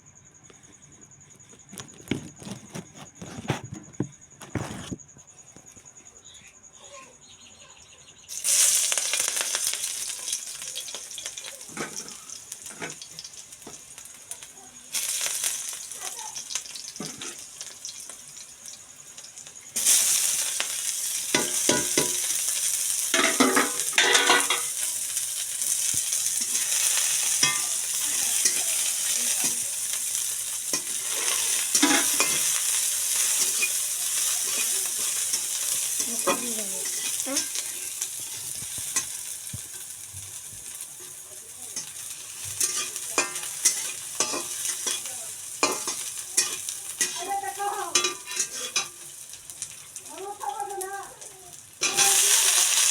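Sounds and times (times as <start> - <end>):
scraping in a pan: 1.7 - 5.0, 8.6 - 13.8, 17.0 - 17.8, 19.8 - 24.9, 25.6 - 40.0, 40.6 - 49.7, 51.8 - 52.9
food sizzling in hot oil: 8.3 - 52.9.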